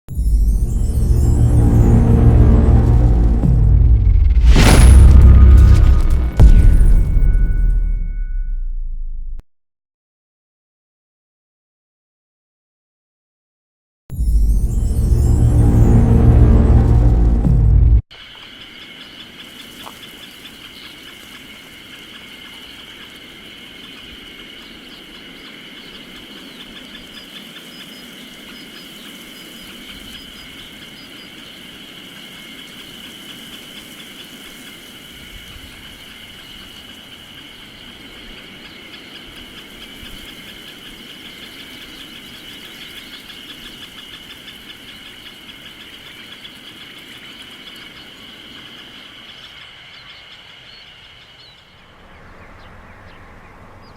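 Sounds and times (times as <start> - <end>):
insects chirping: 0.3 - 3.6, 18.1 - 53.9.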